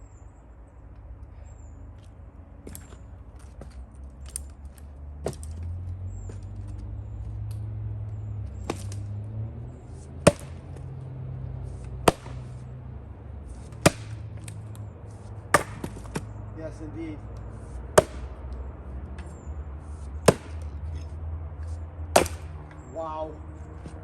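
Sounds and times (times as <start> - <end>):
axe chopping firewood: 2.6 - 6.8, 8.5 - 9.2, 10.0 - 12.8, 13.5 - 16.4, 17.6 - 22.8.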